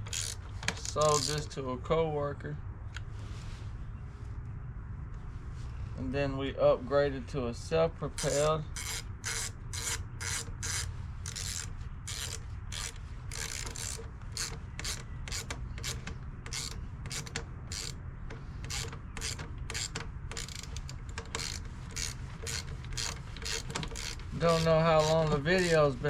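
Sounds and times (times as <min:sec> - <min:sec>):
ratchet wrench clicking: 0:00.0 - 0:01.5, 0:08.2 - 0:18.0, 0:18.6 - 0:25.8.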